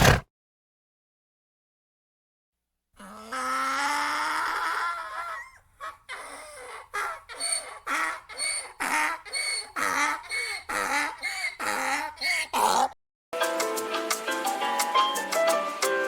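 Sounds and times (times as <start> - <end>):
ducks quacking: 6.2 - 12.9.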